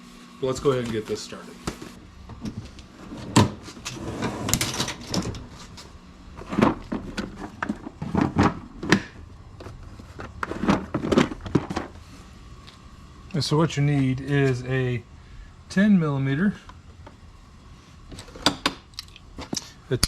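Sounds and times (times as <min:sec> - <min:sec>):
objects clattering when handled: 0:02.4 - 0:12.0.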